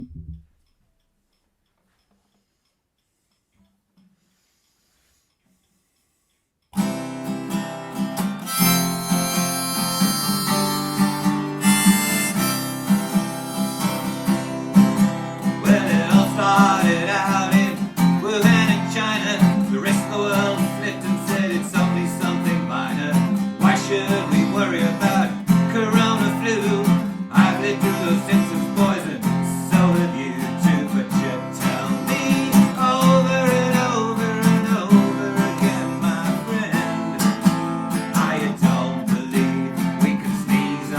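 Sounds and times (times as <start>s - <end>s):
acoustic guitar strumming: 6.8s - 40.9s
harmonica playing held notes: 8.2s - 15.8s.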